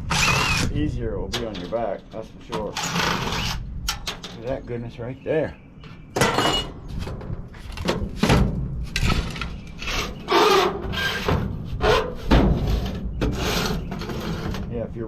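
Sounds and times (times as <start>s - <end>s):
hand tools scraping metal: 2.5s - 4.6s, 9.0s - 14.7s.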